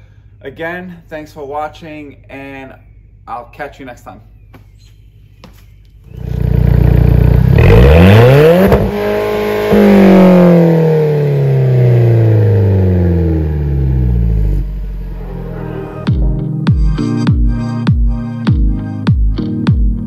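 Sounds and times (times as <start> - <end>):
car engine revving: 6.1 - 16.1.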